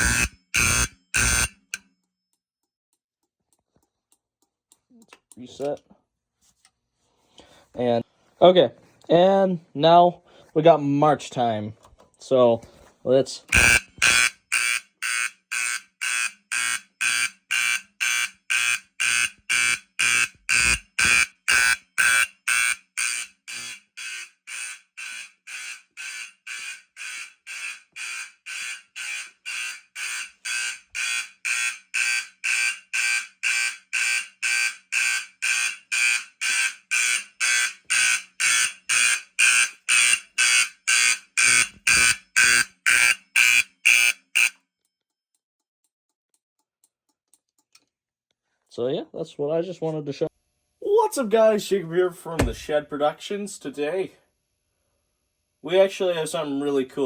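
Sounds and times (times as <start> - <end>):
fire alarm horns blasting: 0.0 - 1.8, 13.5 - 44.5.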